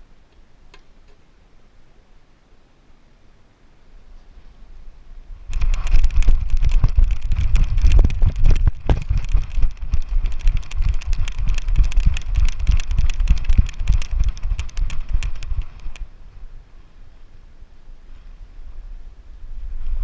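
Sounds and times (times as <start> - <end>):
camera knocking and rattling: 5.5 - 16.0
camera rubbing against harness: 5.5 - 16.0.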